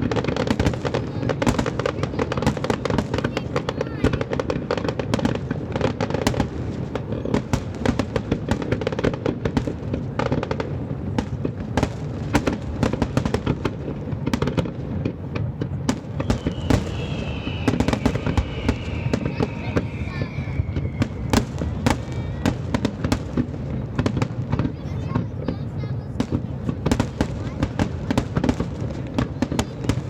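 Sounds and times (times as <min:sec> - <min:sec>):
fireworks bangs and crackles: 0:00.0 - 0:30.0
firework whistle: 0:16.0 - 0:22.8.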